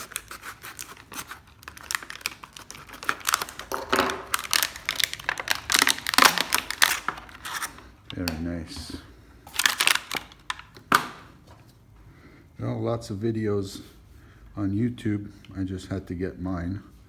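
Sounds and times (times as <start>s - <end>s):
packaging crinkling and rustling: 0.0s - 11.7s.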